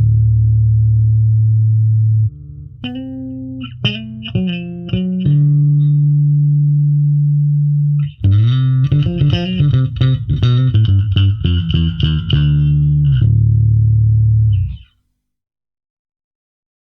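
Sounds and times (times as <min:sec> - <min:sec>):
electric bass playing solo: 0:00.0 - 0:14.9.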